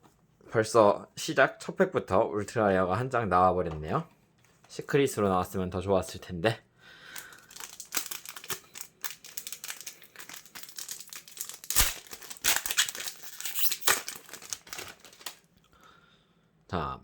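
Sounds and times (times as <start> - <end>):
foil wrapper crinkling and tearing: 7.1 - 15.5.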